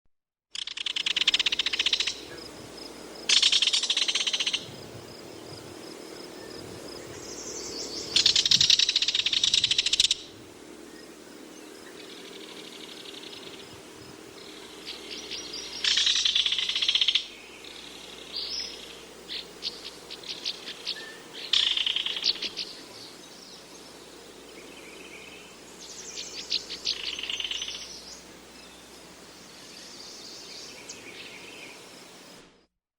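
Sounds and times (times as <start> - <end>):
kingfisher rattling call: 0.6 - 2.2, 3.3 - 4.6, 15.8 - 17.3, 21.4 - 22.6.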